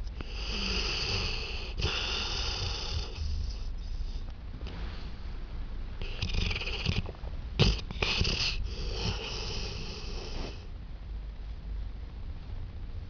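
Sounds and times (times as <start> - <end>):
pet snoring and sniffling: 0.2 - 4.2, 6.0 - 10.7.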